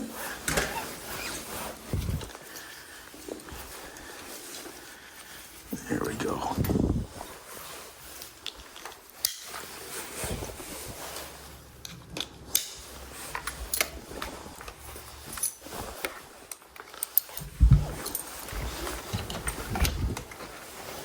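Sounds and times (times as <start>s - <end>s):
rustling handling noise: 0.0s - 21.0s
harness metal clinks and jingling: 14.8s - 15.8s, 16.9s - 19.7s.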